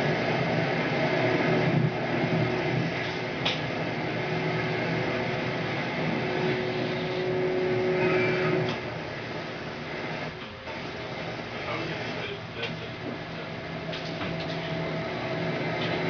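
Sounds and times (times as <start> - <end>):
machine humming: 0.0 - 16.0
held machine tone: 6.2 - 8.8.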